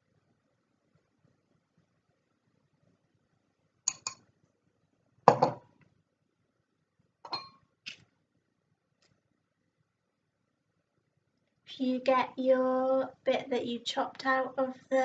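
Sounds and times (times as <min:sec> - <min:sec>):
dishes clattering: 0:05.3 - 0:05.6.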